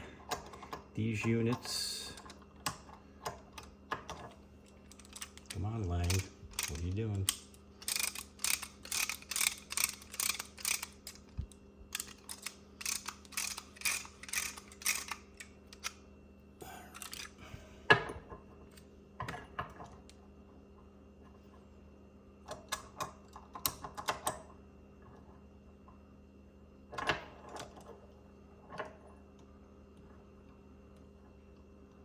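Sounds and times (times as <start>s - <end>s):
ratchet tool clicking: 5.0s - 11.3s, 11.9s - 15.2s.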